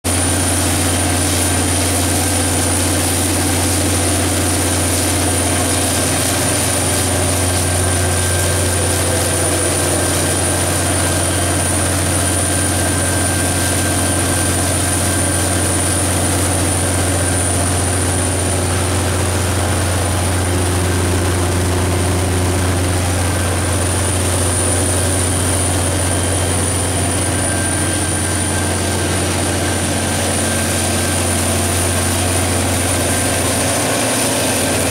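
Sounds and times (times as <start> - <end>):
diesel generator engine running: 0.1 - 34.9
high whine: 0.1 - 34.9.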